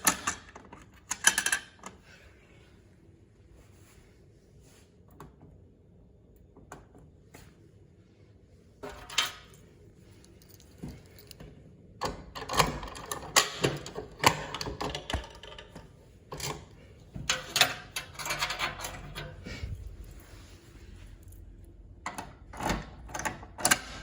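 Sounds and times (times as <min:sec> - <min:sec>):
handling clicks and rattles: 0:09.0 - 0:20.3.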